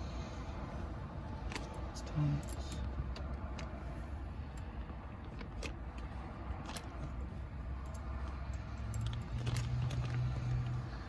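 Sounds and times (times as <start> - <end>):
metal hardware and tools clinking: 1.5 - 3.1.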